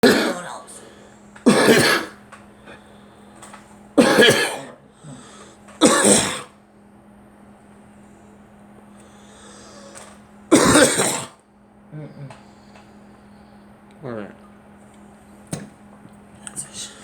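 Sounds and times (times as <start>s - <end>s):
person coughing: 0.0s - 0.6s, 1.4s - 2.2s, 4.0s - 6.5s, 10.5s - 11.4s.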